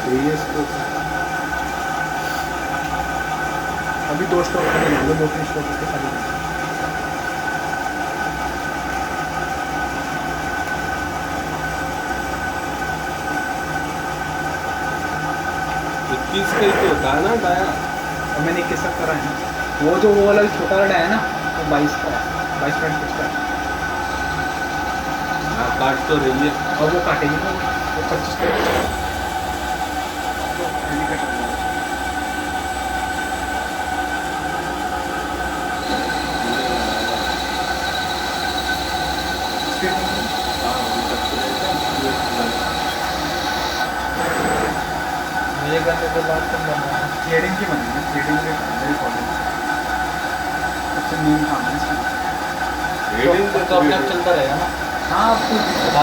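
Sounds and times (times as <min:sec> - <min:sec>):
lathe machine hum: 0:00.8 - 0:07.2, 0:15.6 - 0:20.6, 0:22.3 - 0:31.0, 0:31.6 - 0:45.6, 0:52.1 - 0:56.0.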